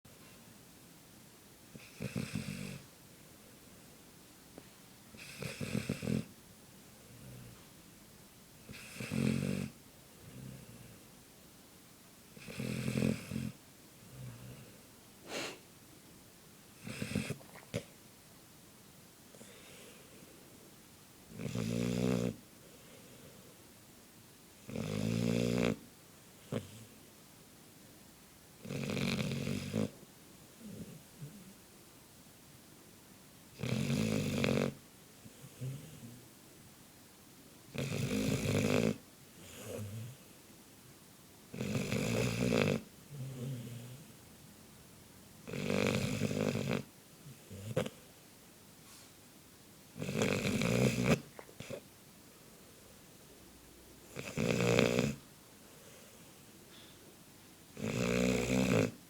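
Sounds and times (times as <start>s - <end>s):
dog snoring: 1.7s - 2.9s, 5.1s - 6.4s, 7.0s - 7.7s, 8.6s - 11.0s, 12.3s - 15.6s, 16.7s - 17.9s, 21.3s - 23.4s, 24.6s - 27.0s, 28.6s - 30.0s, 30.6s - 31.5s, 33.5s - 36.2s, 37.7s - 40.4s, 41.5s - 44.2s, 45.4s - 48.1s, 50.0s - 51.9s, 54.0s - 56.2s, 57.7s - 59.0s.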